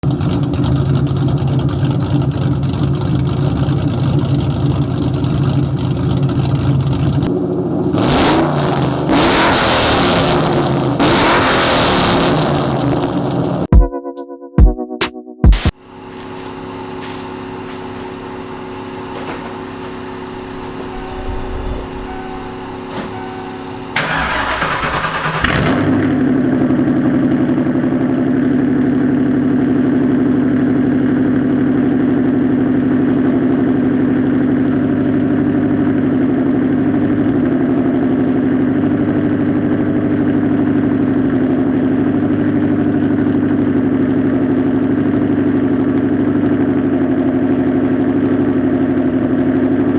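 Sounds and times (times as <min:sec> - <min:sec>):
engine cranking and idling: 0:00.0 - 0:07.3, 0:15.8 - 0:30.2.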